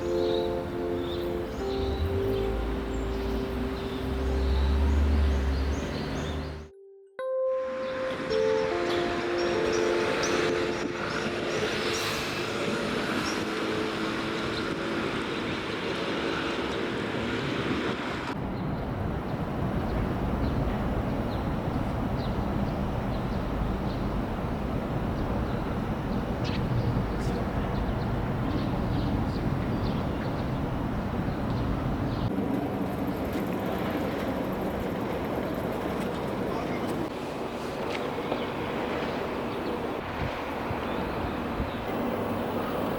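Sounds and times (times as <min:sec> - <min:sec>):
chime-like tones: 0:00.0 - 0:05.8, 0:06.6 - 0:13.0
rumble of passing vehicles: 0:00.0 - 0:06.7, 0:07.9 - 0:42.9.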